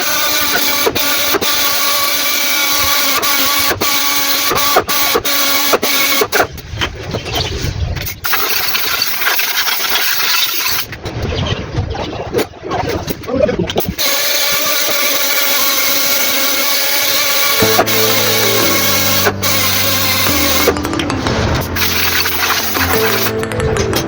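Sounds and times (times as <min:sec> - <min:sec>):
machine humming: 0:15.4 - 0:24.0
low rumble: 0:19.6 - 0:22.7.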